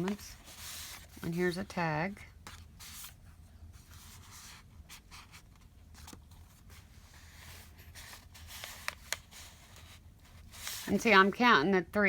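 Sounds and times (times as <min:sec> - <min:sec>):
paper rustling: 0:00.0 - 0:01.7, 0:03.8 - 0:11.4.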